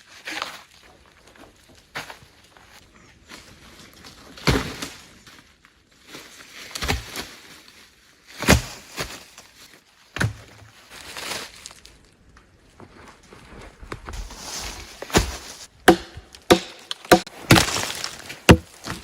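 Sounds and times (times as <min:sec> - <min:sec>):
crunching and rustling: 0:00.2 - 0:19.0
wood knocks: 0:15.9 - 0:17.3, 0:18.5 - 0:19.0.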